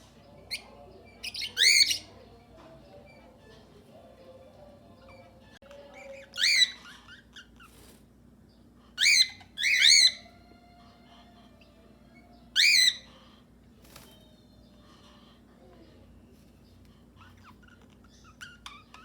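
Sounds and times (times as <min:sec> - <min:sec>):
faint bird chatter: 0:00.0 - 0:19.0
cockatiels calling: 0:00.4 - 0:02.3, 0:04.8 - 0:08.0, 0:08.8 - 0:15.5, 0:16.3 - 0:19.0.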